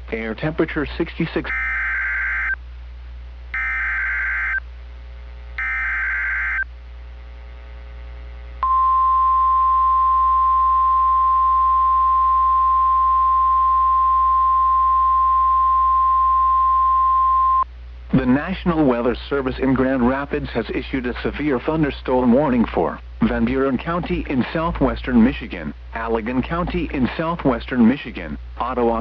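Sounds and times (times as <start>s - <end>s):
steady warning alarm tone: 1.5s - 2.6s, 3.6s - 4.6s, 5.6s - 6.7s
digital data tone bursts: 3.6s - 4.6s, 5.6s - 6.6s.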